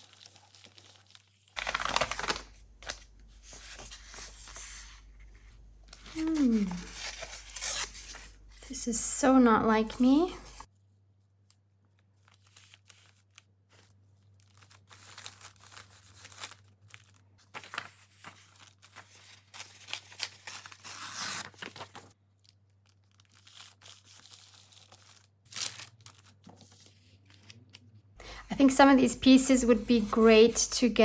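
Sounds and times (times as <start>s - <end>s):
paper tearing and rustling: 0.0s - 4.4s, 12.2s - 22.2s, 23.0s - 27.8s.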